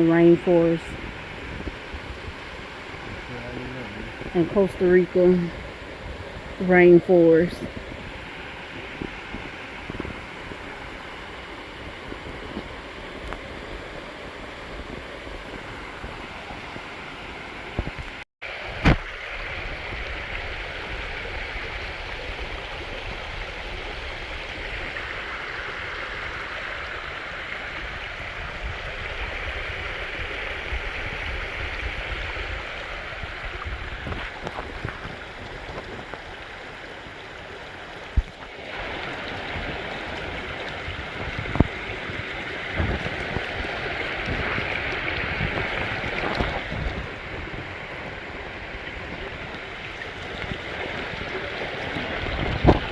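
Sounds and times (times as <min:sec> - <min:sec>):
waterfall splashing into pool: 0:07.7 - 0:52.9.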